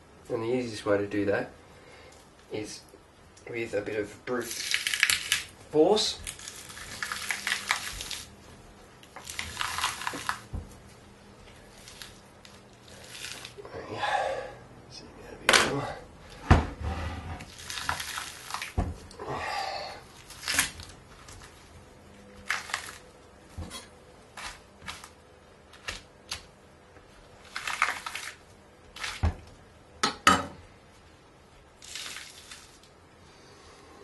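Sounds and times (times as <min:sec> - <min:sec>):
meat handled on board: 0:22.5 - 0:25.1.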